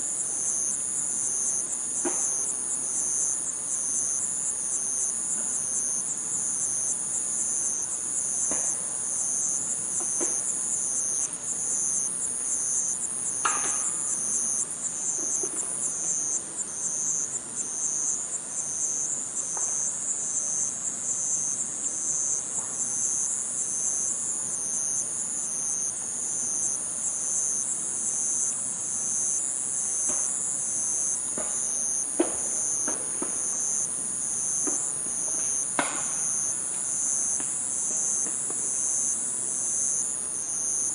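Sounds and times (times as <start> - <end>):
insects chirring: 0.0 - 40.9.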